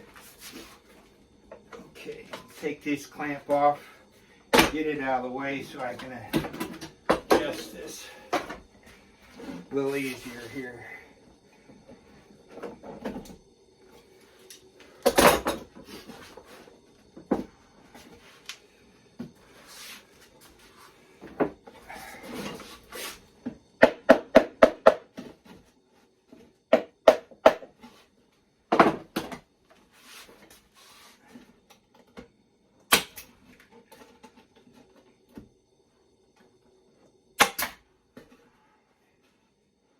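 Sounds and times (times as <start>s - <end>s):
wooden clunks and knocks: 28.7s - 29.4s
pneumatic staple gun shots: 32.9s - 33.2s, 37.4s - 37.8s.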